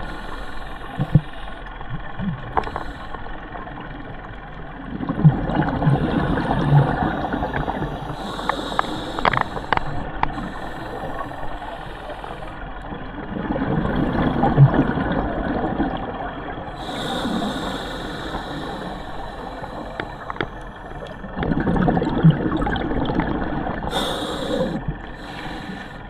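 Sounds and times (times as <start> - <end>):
water gurgling and sloshing: 0.0 - 26.0
boat engine running: 16.6 - 21.3, 23.8 - 26.0.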